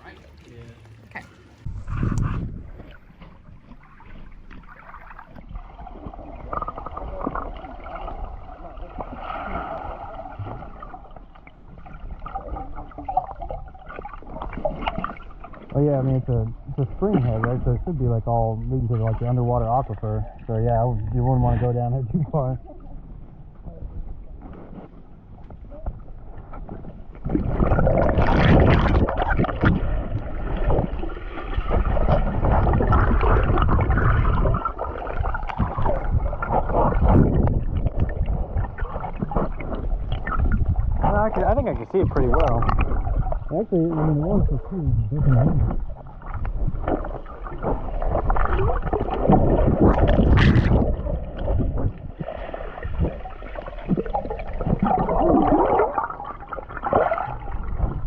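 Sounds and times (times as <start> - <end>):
personal watercraft engine: 0.0 - 5.1
water gurgling and lapping: 0.0 - 58.0.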